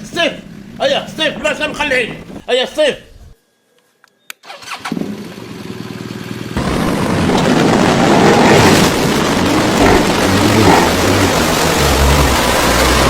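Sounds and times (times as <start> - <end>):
vehicle engine running: 4.9 - 13.0.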